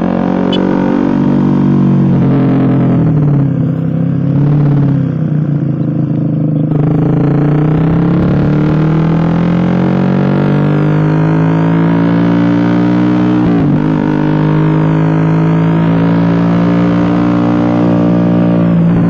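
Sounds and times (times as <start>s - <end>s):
motorcycle engine exhaust: 0.3s - 9.3s.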